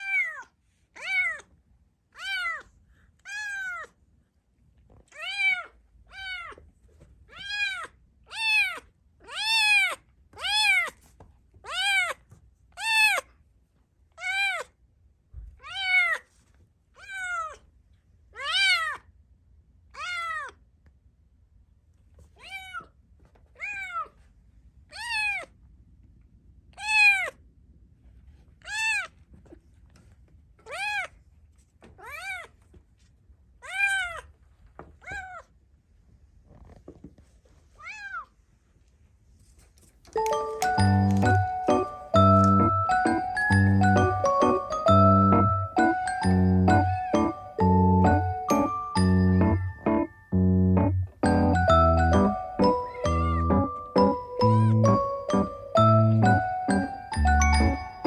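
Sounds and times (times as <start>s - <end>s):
kitten meowing: 7.3s - 10.9s, 25.0s - 25.5s, 26.8s - 27.3s, 52.9s - 53.6s, 54.4s - 55.0s.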